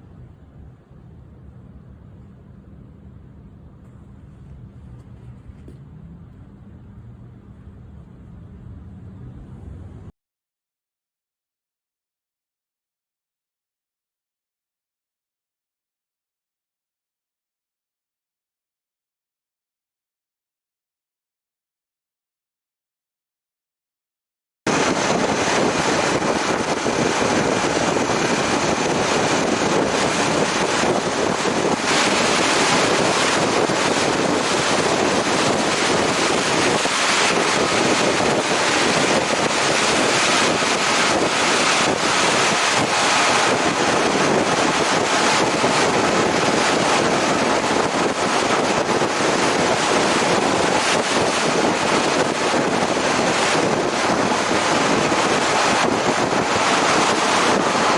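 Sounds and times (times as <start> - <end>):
wind buffeting microphone: 24.7 - 57.9.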